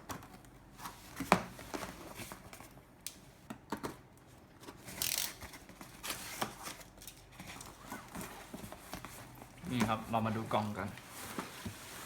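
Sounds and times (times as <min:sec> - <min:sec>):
cardboard scraping rustle: 0:07.4 - 0:12.0.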